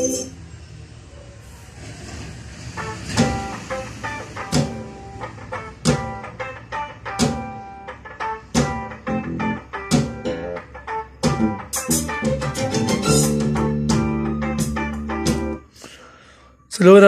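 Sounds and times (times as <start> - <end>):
plucked guitar music: 3.2 - 15.6
sharp drum hits: 4.5 - 4.8, 8.6 - 8.9, 9.9 - 10.3, 11.2 - 12.6.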